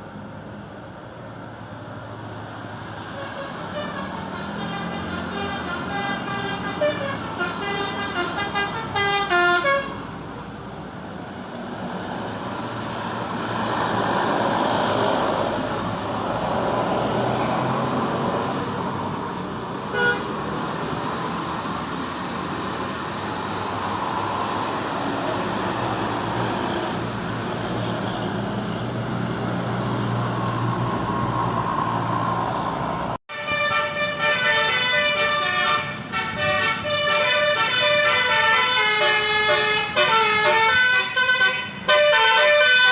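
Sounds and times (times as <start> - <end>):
traffic and engine noise: 0.0 - 42.9
musical car horn tune: 3.2 - 10.0, 19.9 - 20.3, 33.3 - 42.9.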